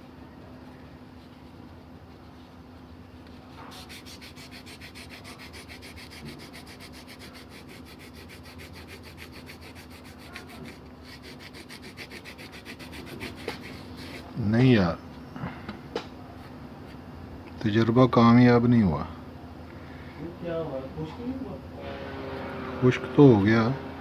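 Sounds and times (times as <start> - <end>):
faint steady hum: 0.0 - 24.0
scrubbing on a circuit board: 3.7 - 14.4.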